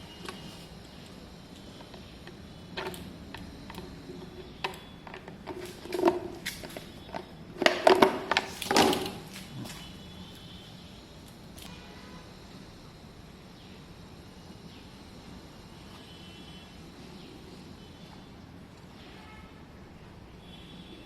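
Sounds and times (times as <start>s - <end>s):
clattering and scraping: 2.7s - 10.0s
clicks and knocks of car parts: 2.8s - 9.8s.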